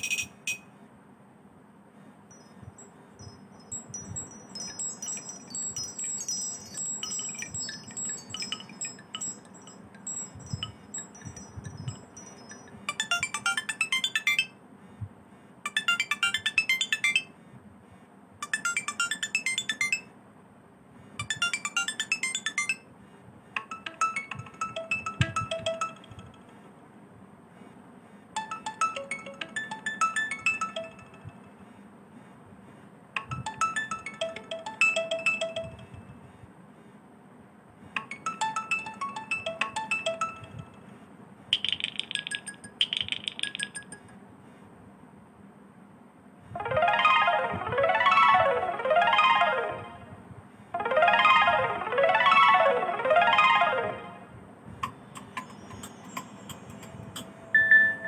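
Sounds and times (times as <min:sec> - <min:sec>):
tinkling ringtone melody: 0:00.0 - 0:00.6, 0:02.3 - 0:14.5, 0:15.7 - 0:17.3, 0:18.4 - 0:20.1, 0:21.2 - 0:22.8, 0:23.6 - 0:26.5, 0:28.4 - 0:31.6, 0:33.2 - 0:36.2, 0:38.0 - 0:40.9, 0:41.6 - 0:44.2, 0:46.6 - 0:50.1, 0:50.8 - 0:58.0
chiming ringtone phrase: 0:03.8 - 0:14.5, 0:18.4 - 0:20.0, 0:21.2 - 0:22.8, 0:23.6 - 0:26.4, 0:28.4 - 0:31.5, 0:33.2 - 0:36.1, 0:38.0 - 0:40.8, 0:46.6 - 0:50.1, 0:50.8 - 0:58.0.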